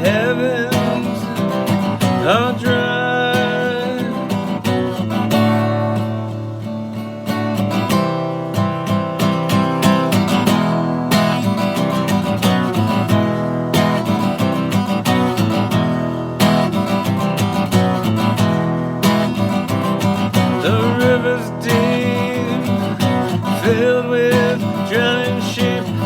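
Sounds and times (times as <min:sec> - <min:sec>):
acoustic guitar strumming chords: 0:00.0 - 0:26.0.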